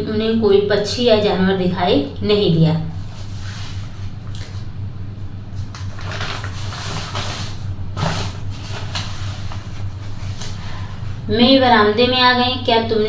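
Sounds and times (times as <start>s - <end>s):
steady low hum: 0.0s - 13.0s
short scraping or rustling: 6.0s - 10.7s.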